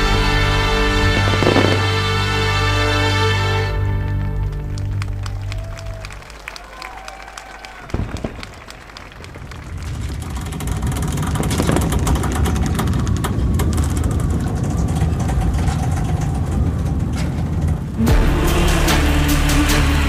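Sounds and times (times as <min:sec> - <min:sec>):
sharp firework crackles: 0:00.0 - 0:03.0, 0:07.7 - 0:15.6
fireworks bursts rumbling: 0:00.0 - 0:05.1, 0:07.6 - 0:18.9
music: 0:00.0 - 0:06.2, 0:18.0 - 0:20.0.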